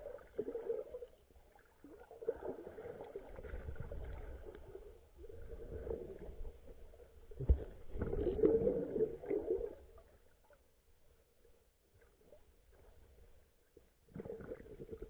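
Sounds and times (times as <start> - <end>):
underwater sloshing and gurgling: 0.0 - 15.0.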